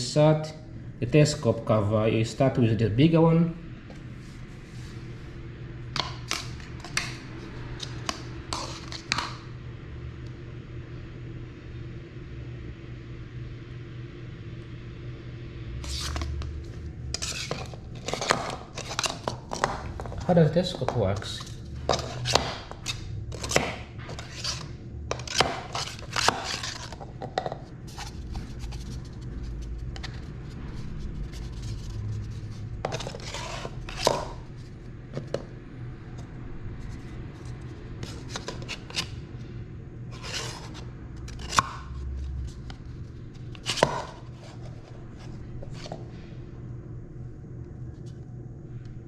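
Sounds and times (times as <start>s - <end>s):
low steady hum: 0.0s - 49.0s.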